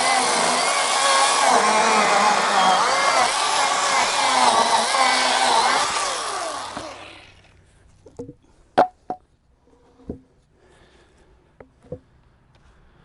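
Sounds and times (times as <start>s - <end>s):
chainsaw cutting wood: 0.0s - 7.6s.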